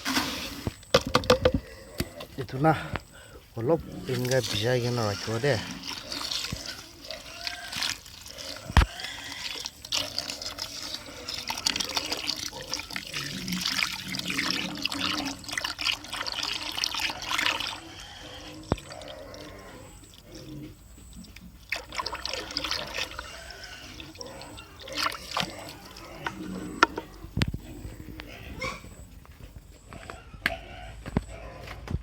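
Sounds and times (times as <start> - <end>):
water splashing into feed: 3.8 - 20.6, 21.2 - 27.9.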